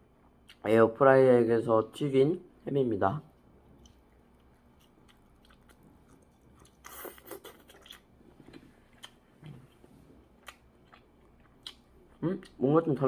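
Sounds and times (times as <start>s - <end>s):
chewing: 3.6s - 12.6s.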